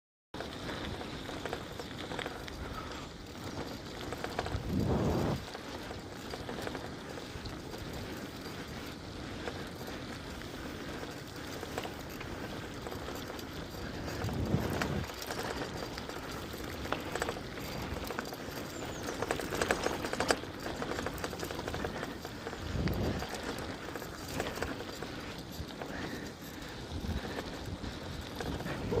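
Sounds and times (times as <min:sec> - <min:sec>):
bike tyres rolling on rough ground: 0:00.4 - 0:29.0
short low rumbles: 0:04.5 - 0:05.4.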